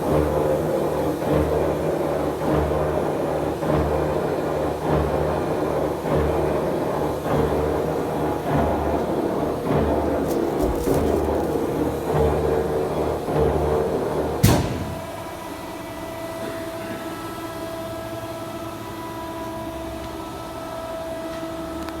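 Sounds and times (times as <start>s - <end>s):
sharp metal clunk: 14.4s - 15.2s.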